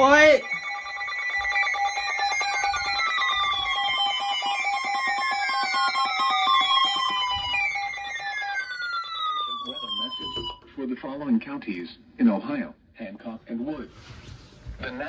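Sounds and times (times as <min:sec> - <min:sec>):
steady alert tones: 0:00.0 - 0:10.6.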